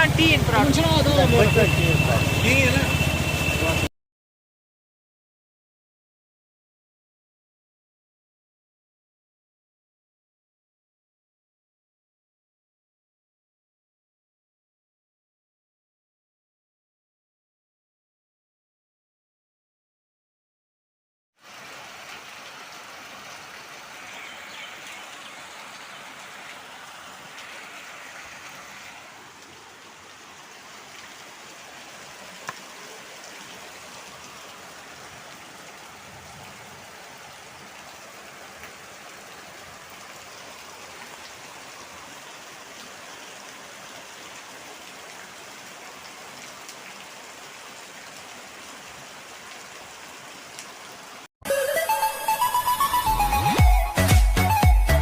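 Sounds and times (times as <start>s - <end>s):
floodwater rushing: 0.0s - 3.9s, 21.4s - 55.0s.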